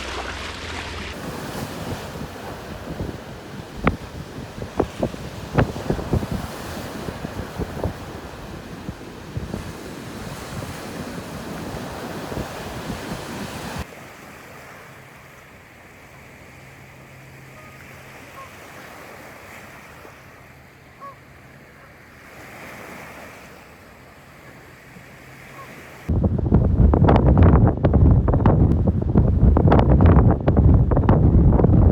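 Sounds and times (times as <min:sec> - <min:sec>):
wind buffeting microphone: 0:00.0 - 0:13.9, 0:26.1 - 0:31.9
waves and surf: 0:00.0 - 0:31.9.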